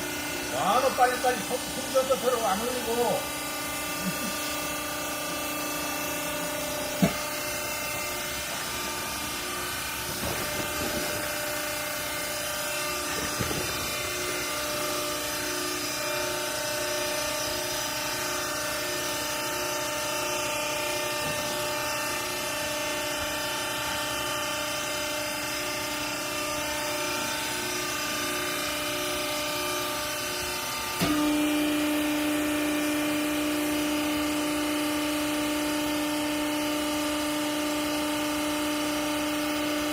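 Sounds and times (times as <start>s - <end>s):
baler machine humming: 0.0s - 23.5s.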